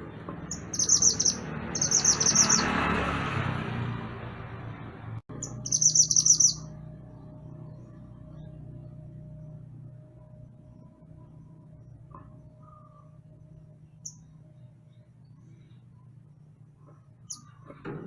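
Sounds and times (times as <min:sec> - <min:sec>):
songbird chattering calls: 0:00.5 - 0:02.7, 0:05.4 - 0:06.7.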